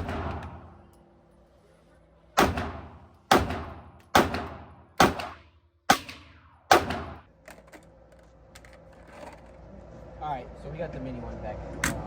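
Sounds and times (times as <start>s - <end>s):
pistol gunshots echoing: 0.0s - 0.7s, 2.4s - 7.3s.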